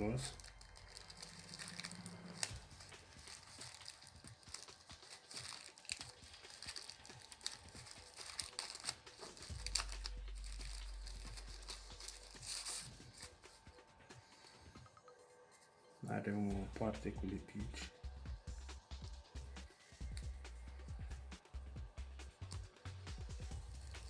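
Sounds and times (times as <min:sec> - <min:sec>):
foam pad wrapping crinkling: 0:00.0 - 0:14.7.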